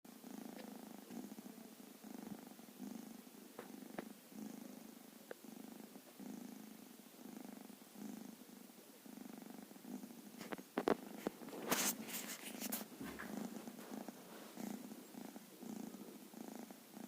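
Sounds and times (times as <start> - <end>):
kitten snoring purr: 0.1 - 17.0.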